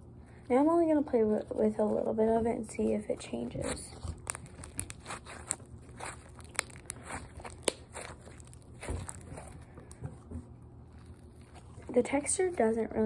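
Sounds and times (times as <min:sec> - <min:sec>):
sticky clicks and crackles: 0:03.4 - 0:10.0
slime squished in hands: 0:03.6 - 0:10.0.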